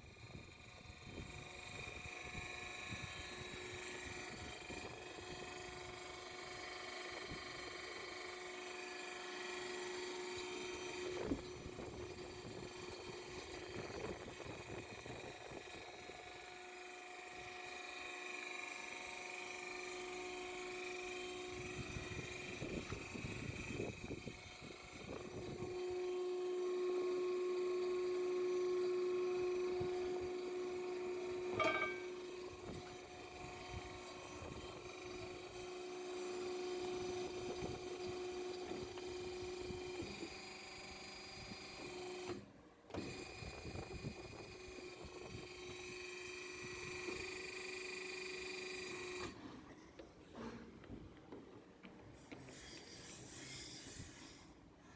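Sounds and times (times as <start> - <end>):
band saw whining: 0.0 - 42.0.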